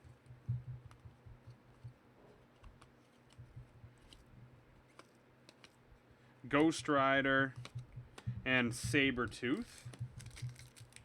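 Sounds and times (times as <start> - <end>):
low steady hum: 0.0 - 11.0
light clicks and taps: 6.5 - 11.0.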